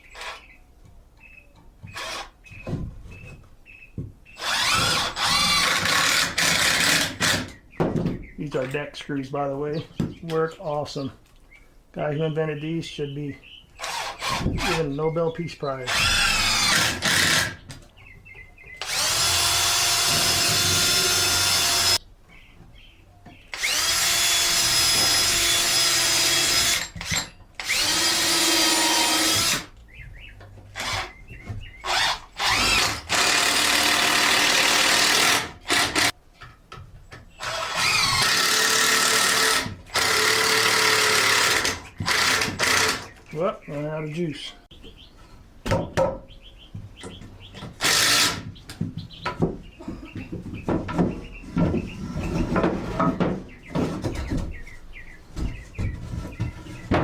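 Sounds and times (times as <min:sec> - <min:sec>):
cordless drill whining: 0:01.9 - 0:02.3, 0:04.4 - 0:07.5, 0:13.8 - 0:14.8, 0:15.9 - 0:17.6, 0:18.8 - 0:22.0, 0:23.5 - 0:29.7, 0:30.8 - 0:31.1, 0:31.8 - 0:36.1, 0:37.4 - 0:43.0, 0:47.8 - 0:48.4.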